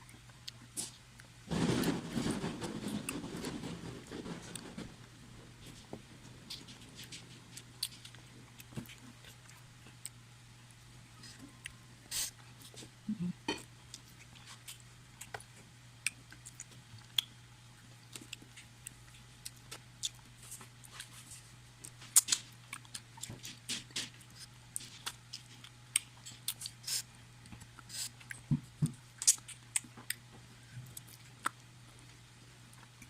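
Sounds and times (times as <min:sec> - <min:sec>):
steady low hum: 0:00.0 - 0:33.0
crunchy chewing and mouth smacks: 0:06.5 - 0:12.9, 0:13.6 - 0:17.4, 0:18.0 - 0:33.0.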